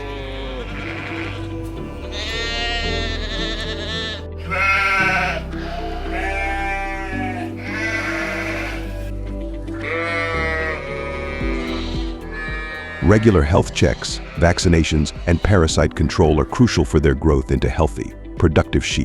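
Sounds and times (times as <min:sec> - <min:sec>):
sheep bleating: 0:00.0 - 0:09.1, 0:09.8 - 0:16.4
background music: 0:00.0 - 0:19.0.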